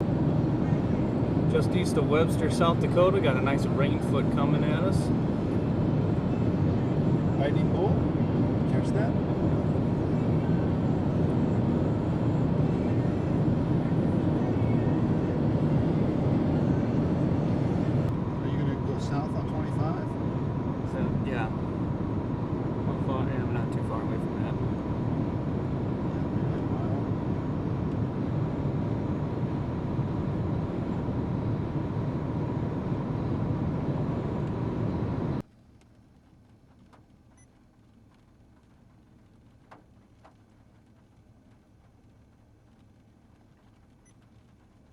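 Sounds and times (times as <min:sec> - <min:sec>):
car road and engine noise: 0:00.0 - 0:44.9
vehicle rumble from inside: 0:00.0 - 0:44.9
faint ticks: 0:35.6 - 0:44.9.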